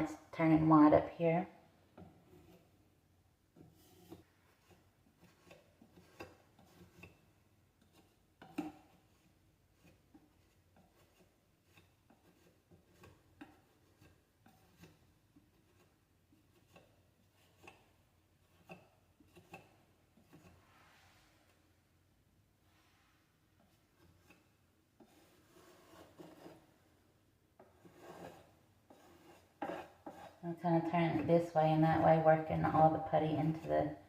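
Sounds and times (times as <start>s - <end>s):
putty knife scraping: 1.9s - 2.8s, 3.5s - 20.8s, 23.6s - 27.0s, 27.6s - 31.5s.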